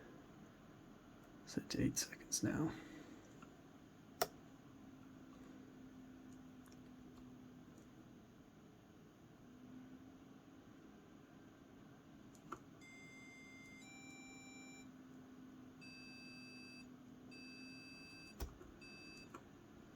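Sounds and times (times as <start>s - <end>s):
click: 4.2s - 4.4s, 12.3s - 12.6s, 18.3s - 18.6s
alarm clock beeping: 12.8s - 14.8s, 15.8s - 16.8s.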